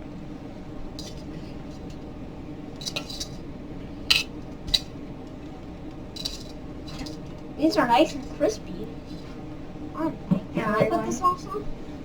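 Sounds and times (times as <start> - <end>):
steady low hum: 0.0 - 12.0
utensils clinking against dishes: 4.1 - 4.9, 6.2 - 7.2.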